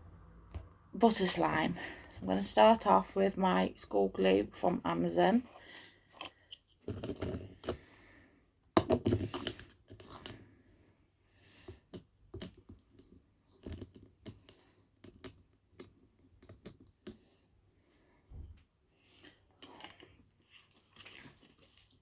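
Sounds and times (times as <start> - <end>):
plastic containers clicking and knocking: 6.2 - 7.9, 8.8 - 10.4.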